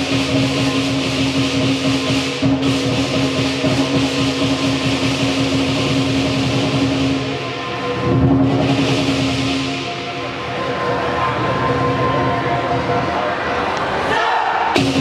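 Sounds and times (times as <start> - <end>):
big drum beaten rapidly: 0.0 - 10.2, 14.8 - 15.0
gong: 0.0 - 13.7
clashing cymbals: 0.0 - 14.0, 14.7 - 15.0.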